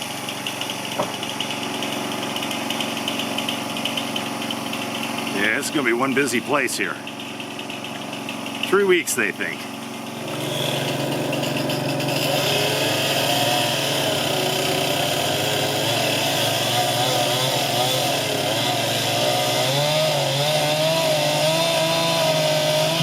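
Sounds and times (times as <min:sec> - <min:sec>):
low engine hum: 0:00.0 - 0:16.1
chainsaw engine running: 0:00.0 - 0:23.0.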